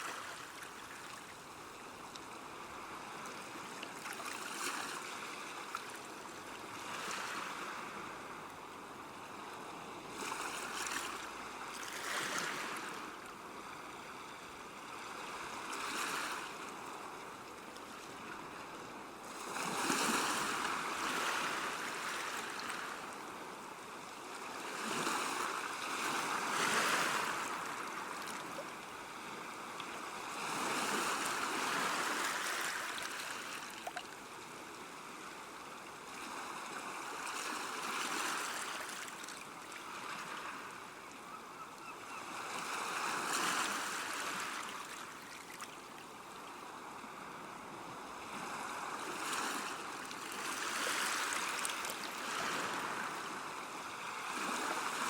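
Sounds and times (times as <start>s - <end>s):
river water flowing: 0.0s - 8.6s, 25.4s - 35.3s, 48.9s - 55.0s.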